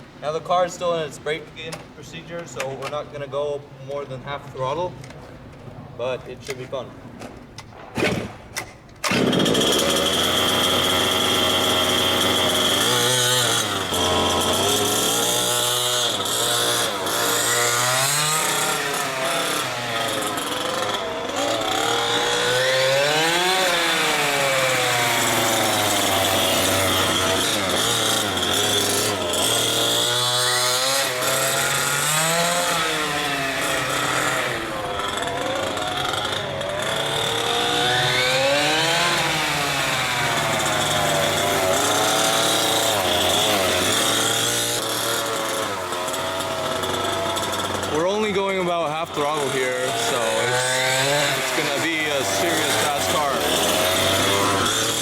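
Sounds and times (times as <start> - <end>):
two-stroke engine revving: 9.0 - 55.0.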